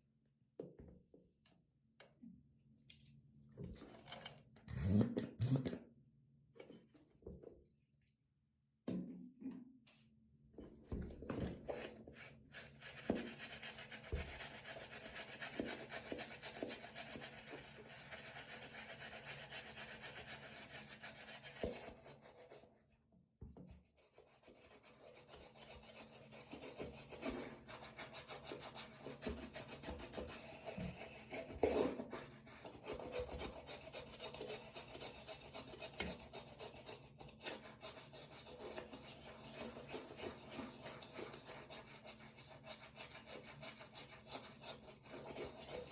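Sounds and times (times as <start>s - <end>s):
brush scrubbing a wet sneaker: 12.2s - 22.6s, 24.0s - 45.9s.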